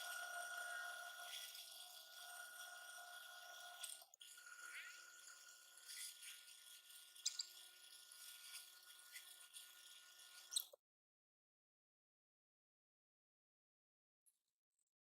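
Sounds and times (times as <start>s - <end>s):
faint steady hum: 0.0s - 10.5s.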